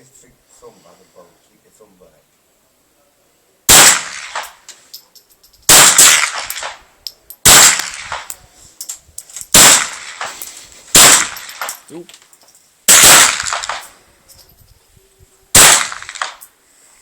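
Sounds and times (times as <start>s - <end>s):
rifle shots: 3.7s - 4.6s, 5.7s - 6.8s, 7.4s - 8.4s, 9.5s - 11.8s, 12.9s - 14.0s, 15.5s - 16.5s.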